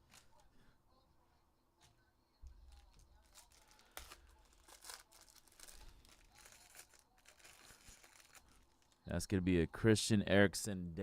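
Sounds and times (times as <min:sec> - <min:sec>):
cards rustling and clicking: 0:02.6 - 0:09.0
card wrapper crinkling and tearing: 0:02.7 - 0:09.0.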